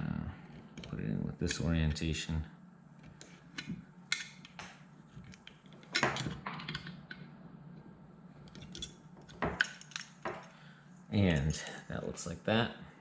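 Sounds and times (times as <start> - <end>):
small metal parts clicking: 8.5 - 10.5.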